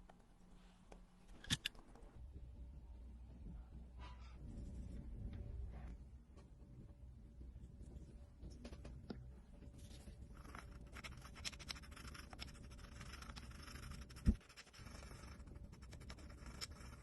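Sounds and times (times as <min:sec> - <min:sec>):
small hand tools scratching: 0:10.3 - 0:17.0.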